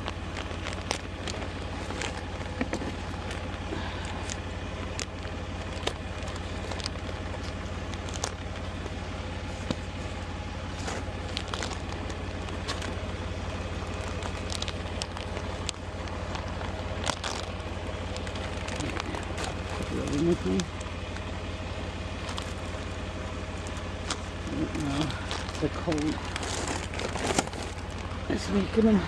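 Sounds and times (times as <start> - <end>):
light clicks and crackles: 0.0 - 21.4
vehicle engine idling: 0.0 - 29.0.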